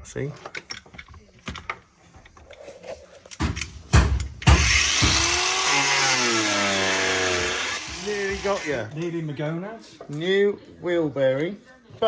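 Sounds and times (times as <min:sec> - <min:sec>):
knocks: 0:03.4 - 0:05.4
power tool cutting: 0:04.4 - 0:08.9.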